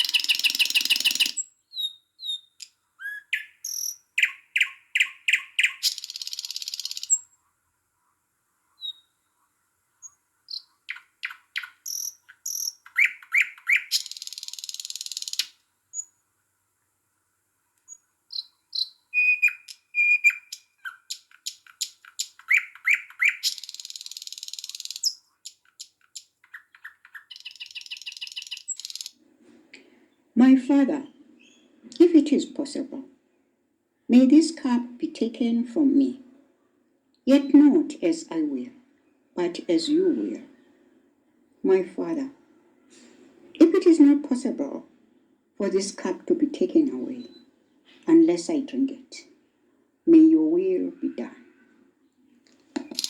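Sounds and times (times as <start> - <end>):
songbirds chirping and singing: 0.0 - 16.1, 17.9 - 29.2.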